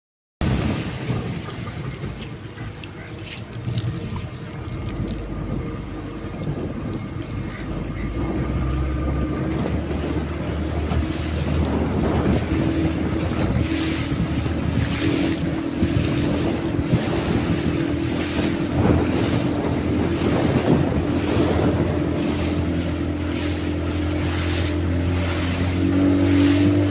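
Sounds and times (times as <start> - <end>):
sea wash: 0.4 - 26.9
wind buffeting microphone: 0.4 - 26.9
steady low hum: 1.1 - 26.9.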